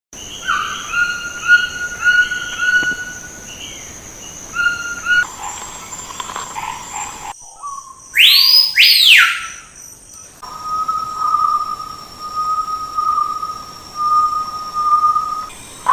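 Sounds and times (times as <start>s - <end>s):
bird whistled calls: 0.4s - 3.3s, 4.5s - 5.3s, 7.4s - 9.7s, 10.4s - 15.5s
loud sweeping whistles: 8.2s - 9.6s, 10.4s - 15.5s.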